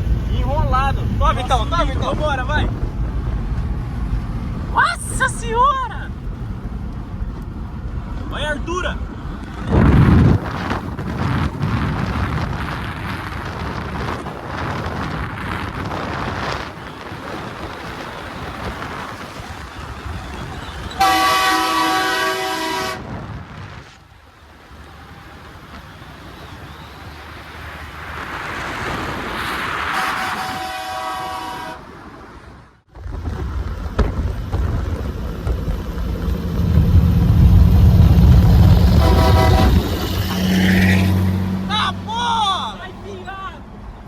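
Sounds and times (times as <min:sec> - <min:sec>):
wind noise: 0:00.0 - 0:24.2, 0:25.5 - 0:41.7
road noise from moving vehicle: 0:00.0 - 0:44.0
loud multi-tone air horn: 0:21.0 - 0:23.2, 0:29.9 - 0:31.9, 0:38.9 - 0:40.8.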